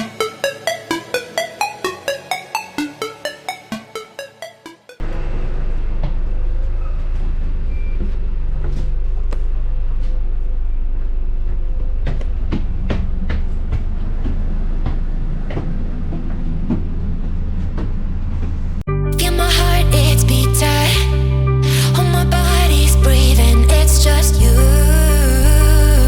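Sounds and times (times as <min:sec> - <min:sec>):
bus drivetrain and road rumble: 0:05.0 - 0:18.8.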